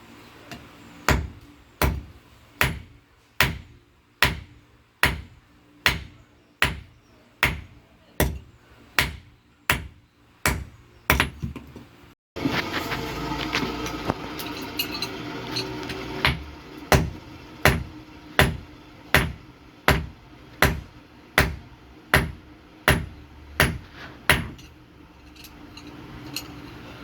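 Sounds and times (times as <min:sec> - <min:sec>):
metal clatter: 0:13.8 - 0:16.2, 0:24.5 - 0:27.0.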